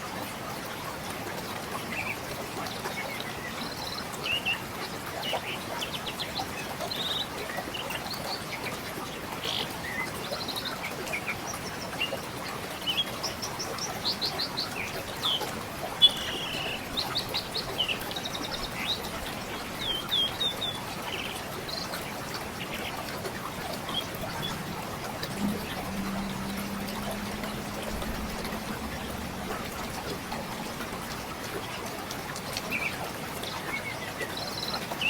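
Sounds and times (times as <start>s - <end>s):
river flowing: 6.6s - 35.0s
songbirds chirping and trilling: 9.4s - 35.0s.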